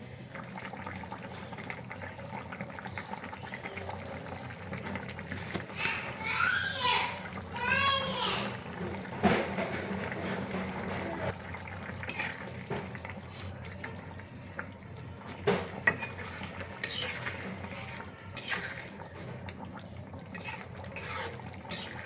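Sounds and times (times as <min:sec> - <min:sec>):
spoon stirring and scraping pot: 0:03.3 - 0:05.8, 0:09.1 - 0:11.3, 0:11.9 - 0:14.0, 0:15.2 - 0:22.0.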